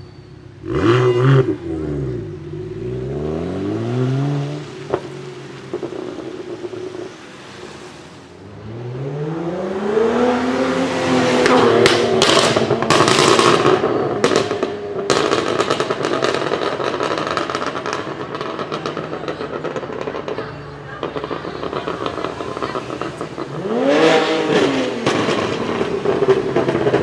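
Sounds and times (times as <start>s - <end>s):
car engine revving: 0.5s - 27.0s
exhaust backfire pops and crackles: 3.5s - 7.2s, 11.4s - 27.0s.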